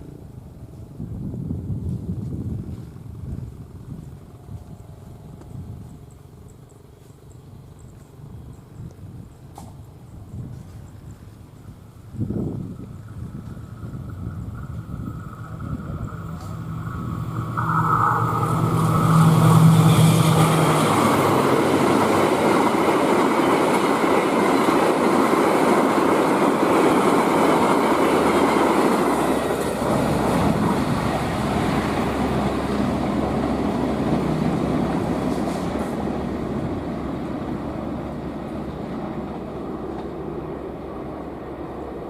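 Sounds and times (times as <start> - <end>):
diesel locomotive passing: 0.0 - 42.0
train wheels rushing on rails: 9.2 - 42.0.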